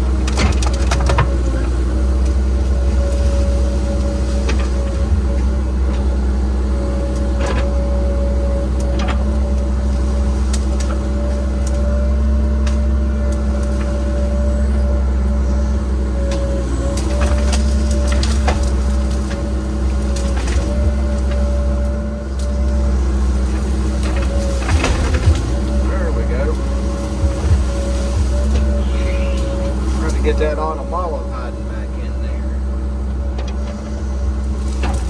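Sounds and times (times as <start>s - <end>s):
excavator diesel engine: 0.0s - 35.0s
hydraulic whine: 0.0s - 35.0s
wood and brush cracking: 0.2s - 35.0s.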